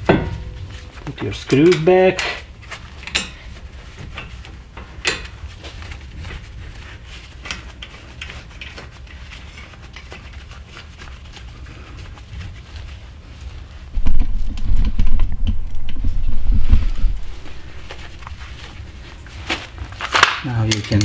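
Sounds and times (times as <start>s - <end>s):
steady low rumble: 0.0s - 1.6s, 13.9s - 19.8s.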